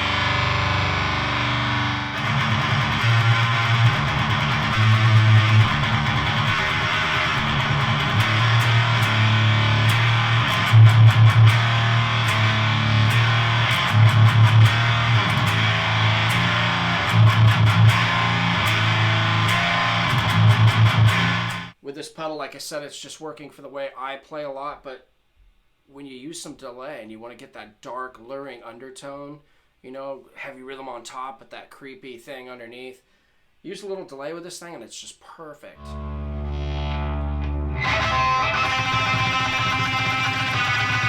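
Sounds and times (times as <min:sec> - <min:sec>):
distorted electric guitar riff: 0:00.0 - 0:21.8, 0:35.8 - 0:41.0.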